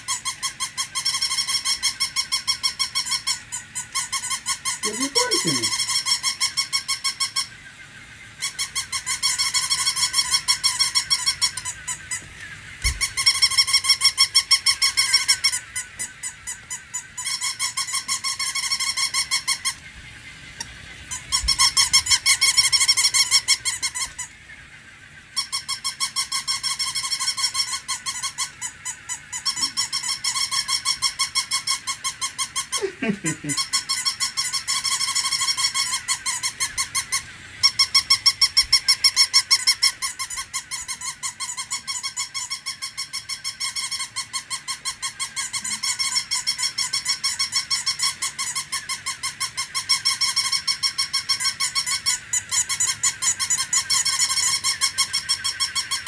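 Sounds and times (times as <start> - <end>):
toy puppy electronic yapping: 0.0 - 7.6, 8.3 - 19.9, 20.5 - 24.5, 25.2 - 56.0.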